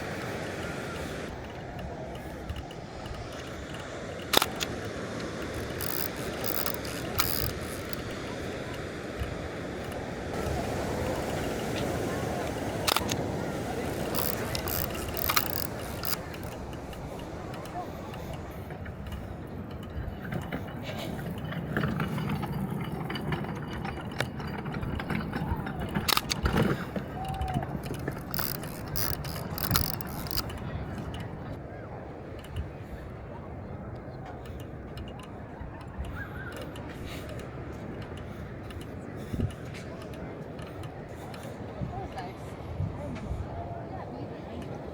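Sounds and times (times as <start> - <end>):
click: 0.0 - 11.8, 12.5 - 22.6, 24.9 - 31.6
film advance ratcheting: 2.5 - 8.9, 12.8 - 13.2, 13.8 - 17.2, 27.8 - 30.6
camera shutter clack: 4.3 - 4.7.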